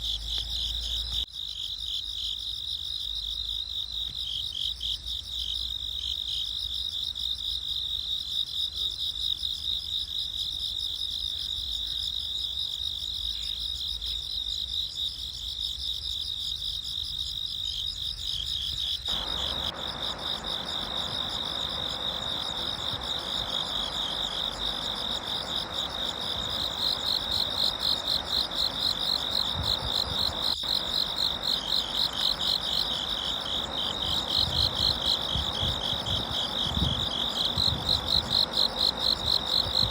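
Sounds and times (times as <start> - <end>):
insects shrilling: 19.0 - 39.9
soft even hiss: 19.1 - 39.9.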